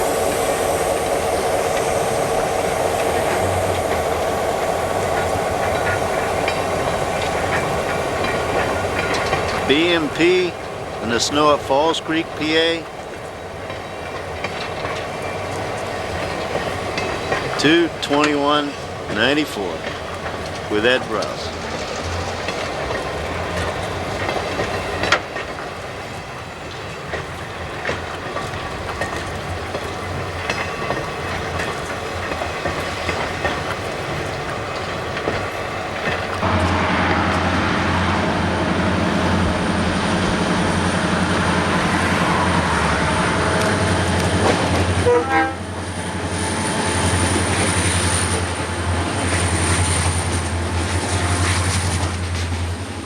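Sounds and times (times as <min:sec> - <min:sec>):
diesel locomotive engines droning: 0:00.0 - 0:53.0
wheels clattering over rail joints: 0:00.0 - 0:53.0.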